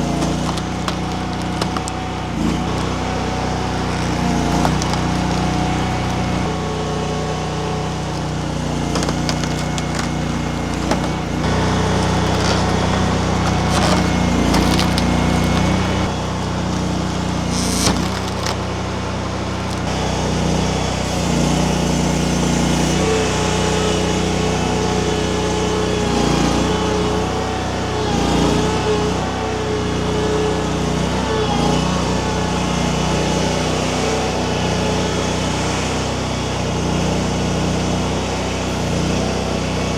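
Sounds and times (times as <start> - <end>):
wood cracking and splintering: 0.0 - 20.1
hydraulic wood splitter: 0.0 - 39.9
skid steer engine running: 0.0 - 39.9.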